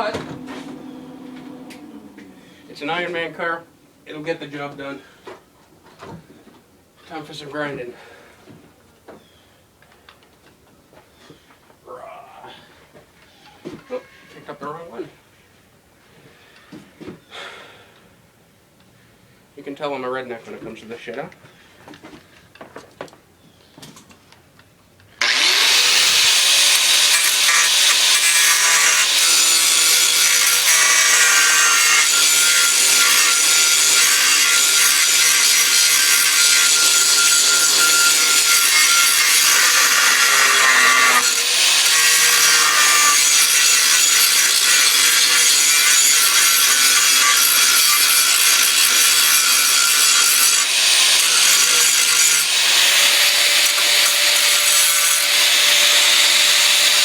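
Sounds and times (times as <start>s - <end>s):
grinder grinding metal: 0.0s - 3.7s, 25.2s - 57.0s.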